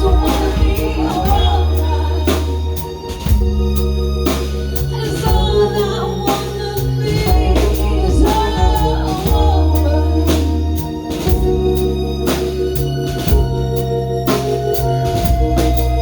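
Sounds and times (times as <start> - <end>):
person singing: 0.0 - 3.5, 4.8 - 11.7
drum beat: 0.0 - 3.9
bass notes: 0.0 - 16.0
organ-like keyboard: 0.0 - 16.0.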